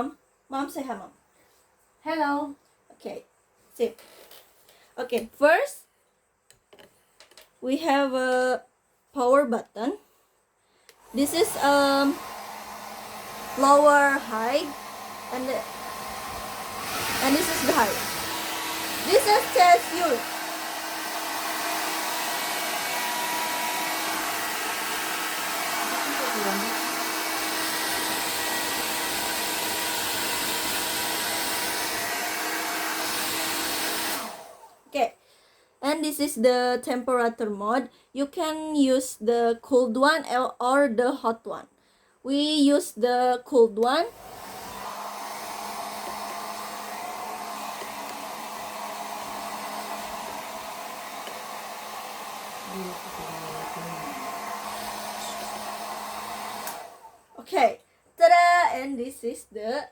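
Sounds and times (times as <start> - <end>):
hair dryer blowing air: 10.9 - 34.8, 44.1 - 57.2.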